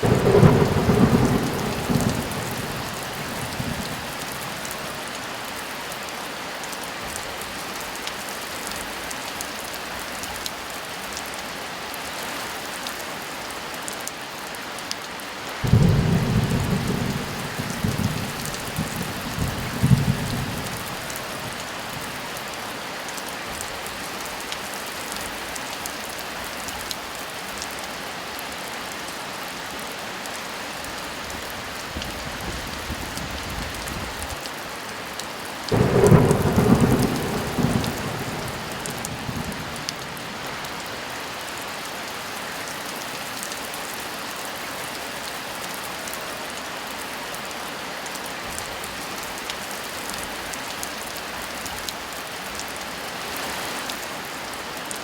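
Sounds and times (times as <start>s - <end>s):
loud thunderclap: 0.0s - 4.4s, 15.6s - 22.0s, 35.7s - 40.8s
distant thunder rumble: 0.0s - 4.8s, 15.6s - 22.4s, 35.7s - 41.1s
heavy rain falling: 0.0s - 55.0s.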